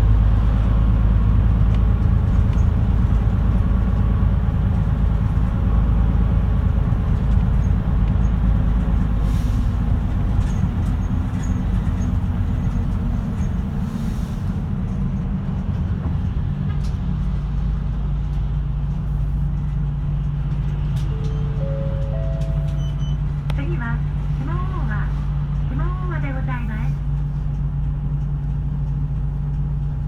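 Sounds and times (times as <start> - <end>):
bus diesel engine rumbling: 0.0 - 30.0.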